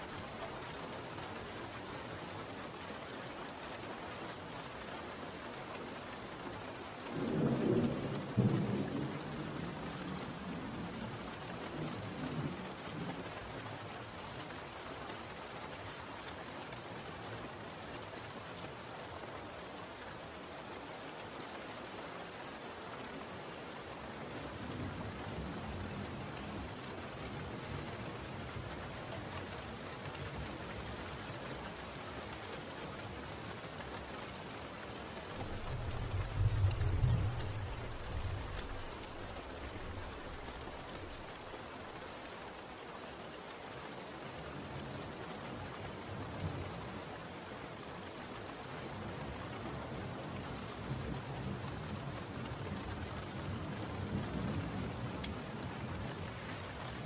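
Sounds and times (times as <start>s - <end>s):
steady rain: 0.0s - 57.0s
distant thunder rumble: 35.4s - 41.5s.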